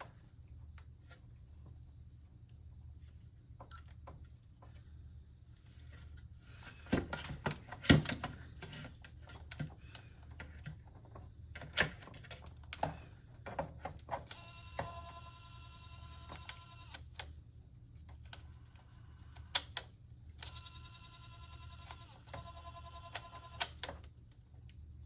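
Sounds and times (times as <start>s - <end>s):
recorder motor whine: 14.4s - 17.1s, 20.5s - 23.7s.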